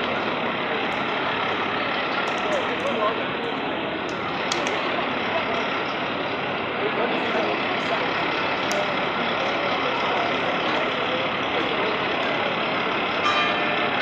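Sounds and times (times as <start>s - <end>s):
fire engine idling: 0.0s - 14.0s.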